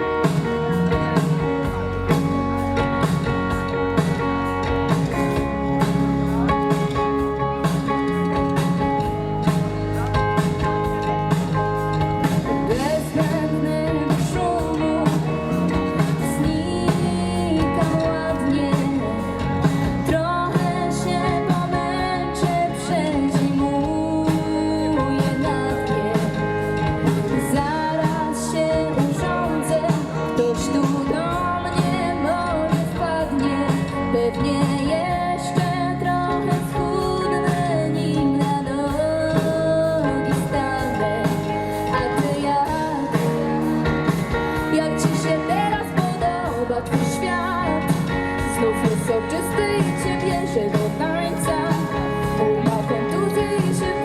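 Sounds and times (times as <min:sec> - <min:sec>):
drums: 0:00.0 - 0:54.0
electric guitar: 0:00.0 - 0:54.0
person singing: 0:12.5 - 0:54.0.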